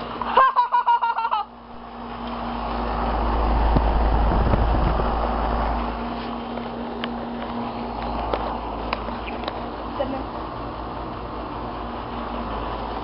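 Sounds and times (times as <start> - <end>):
air conditioner humming: 0.0 - 13.0
vehicle passing by: 1.7 - 10.2.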